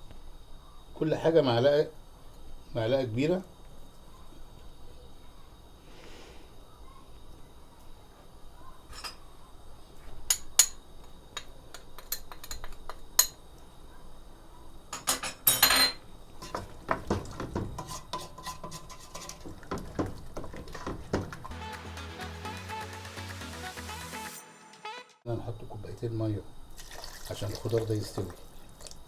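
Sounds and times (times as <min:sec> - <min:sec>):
metal spoon scraping a pot: 0:15.0 - 0:21.5.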